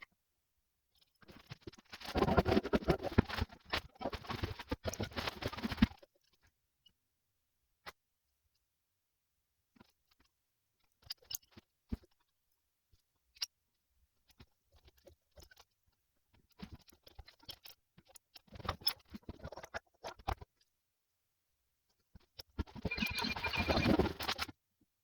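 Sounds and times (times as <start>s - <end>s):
metal parts scraping and knocking: 22.9s - 24.5s.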